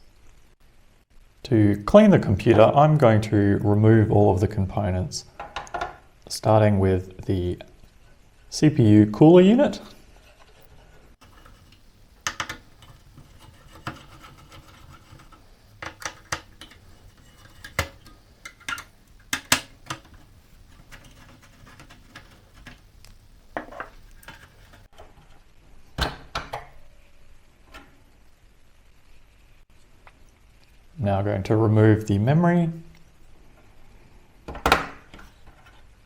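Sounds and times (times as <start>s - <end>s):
clicks and clinks of cooler removal: 11.2s - 22.9s, 23.6s - 24.8s.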